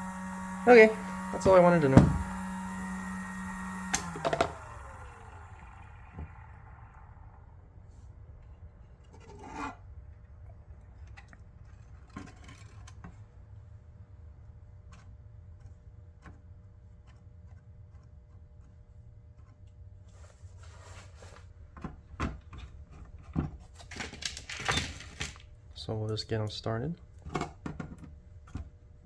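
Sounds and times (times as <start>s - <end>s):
steady low hum: 0.0s - 9.2s.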